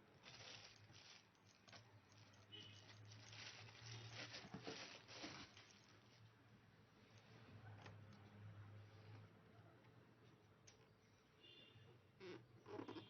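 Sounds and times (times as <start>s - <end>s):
faint rustles and clicks: 0.0s - 8.3s.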